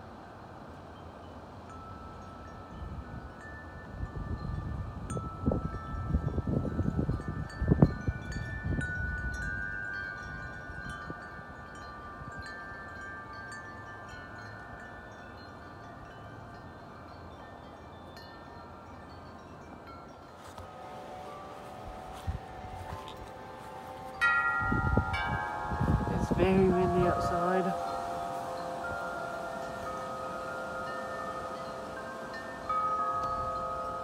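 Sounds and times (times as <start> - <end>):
metal wind chimes ringing: 0.0 - 34.0
wind buffeting microphone: 2.6 - 13.1, 20.6 - 34.0.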